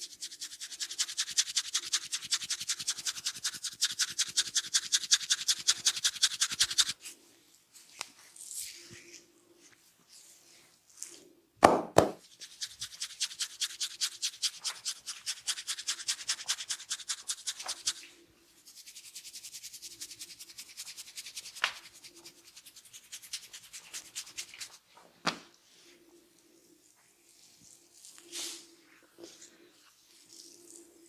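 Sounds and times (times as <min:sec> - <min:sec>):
fingers rubbing through hair: 0:00.0 - 0:07.0, 0:12.0 - 0:24.8
loud slaps: 0:11.6 - 0:12.2.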